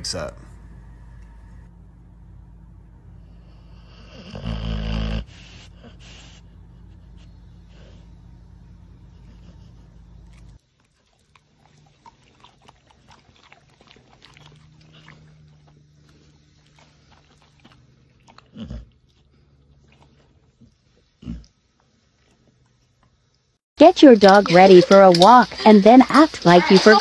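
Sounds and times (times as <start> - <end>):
steady low hum: 0.0 - 27.0
dog chewing and biting: 10.2 - 20.7.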